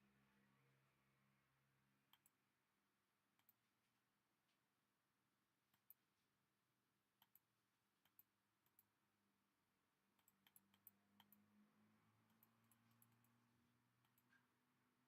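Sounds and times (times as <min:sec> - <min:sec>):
faint low hum: 0:00.0 - 0:15.0
faint scattered clicks: 0:02.1 - 0:02.4, 0:10.1 - 0:11.6, 0:12.2 - 0:14.5.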